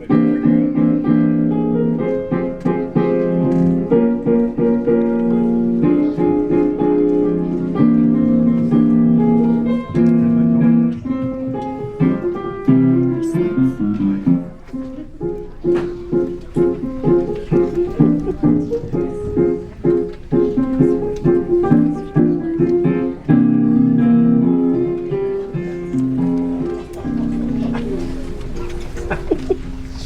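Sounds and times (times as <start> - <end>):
piano playing chords: 0.0 - 30.0.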